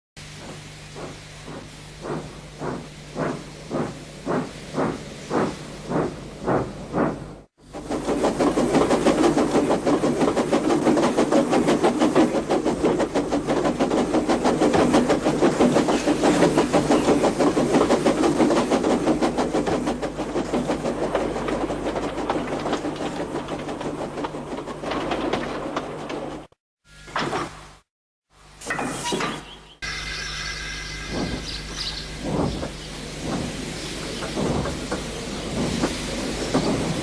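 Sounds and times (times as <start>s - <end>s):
steam locomotive chuffing: 0.2s - 26.5s, 28.6s - 37.0s.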